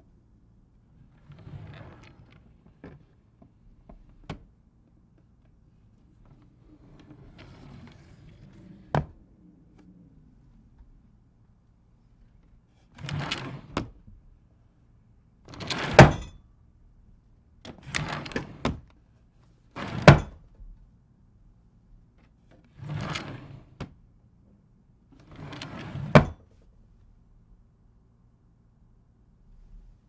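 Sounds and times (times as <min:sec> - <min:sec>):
drawer sliding: 0:01.1 - 0:03.1, 0:06.4 - 0:09.2, 0:13.0 - 0:14.0, 0:19.8 - 0:20.4, 0:22.8 - 0:23.9, 0:25.2 - 0:26.4
drawer knocking shut: 0:15.8 - 0:16.3, 0:19.9 - 0:20.4, 0:26.0 - 0:26.4.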